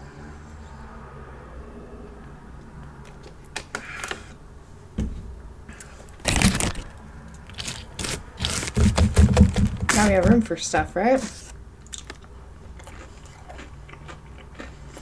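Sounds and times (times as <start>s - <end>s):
takeout packaging crinkling: 6.2s - 6.9s.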